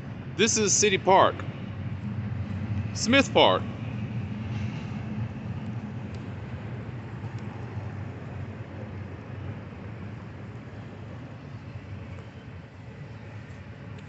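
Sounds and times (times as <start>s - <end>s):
diesel locomotives rumbling: 0.0s - 14.0s.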